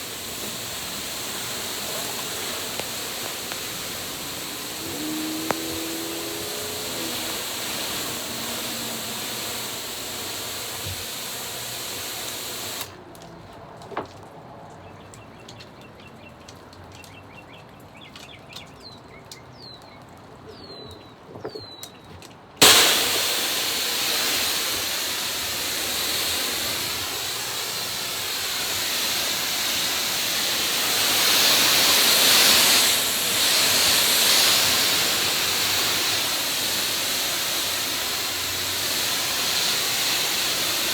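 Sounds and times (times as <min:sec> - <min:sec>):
pressure washer spray hissing: 0:00.0 - 0:13.0, 0:22.6 - 0:40.9.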